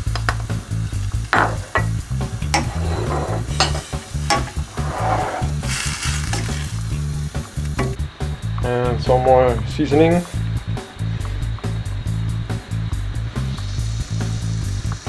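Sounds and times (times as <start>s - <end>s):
background music: 0.0s - 15.0s
meat and onions sizzling in a pan: 0.1s - 8.4s, 13.4s - 15.0s
spoon scraping a pan: 2.5s - 6.8s.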